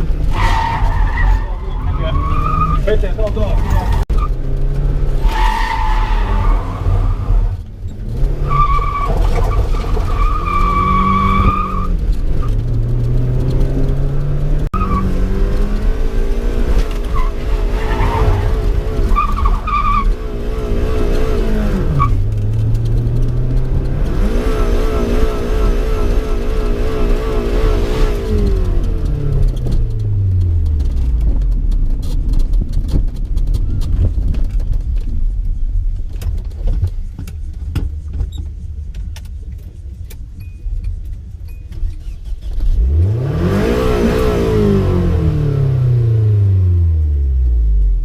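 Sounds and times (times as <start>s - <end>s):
tyres squealing and skidding: 0.0s - 4.4s, 5.2s - 7.6s, 8.2s - 12.6s, 14.8s - 15.2s, 16.9s - 22.3s
car engine revving: 0.0s - 31.6s, 42.3s - 48.0s.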